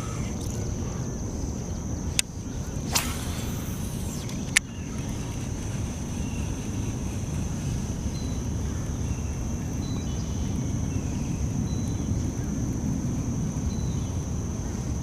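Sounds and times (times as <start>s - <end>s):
faint chirps: 0.0s - 1.1s, 2.4s - 12.0s
wind rumble on microphone: 0.0s - 15.0s
thin high-pitched whine: 2.1s - 10.8s.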